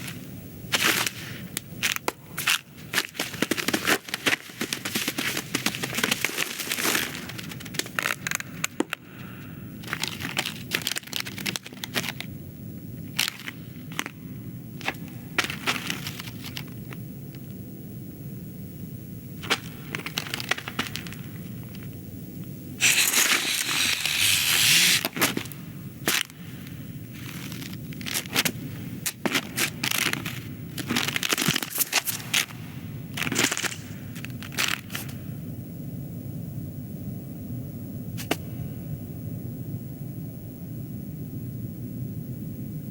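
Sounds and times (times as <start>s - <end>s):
sharp crunches and crackles: 1.8s - 8.8s, 22.8s - 26.3s.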